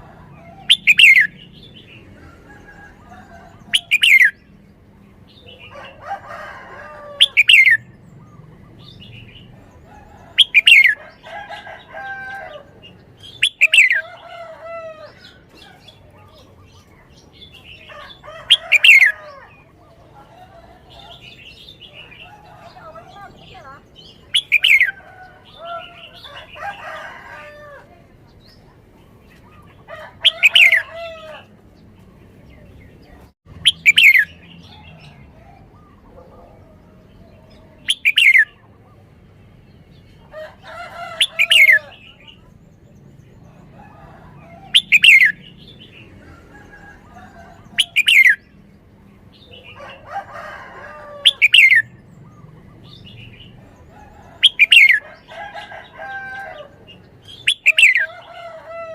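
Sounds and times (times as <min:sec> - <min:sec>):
bird singing: 0:00.0 - 0:31.4, 0:32.1 - 0:58.9.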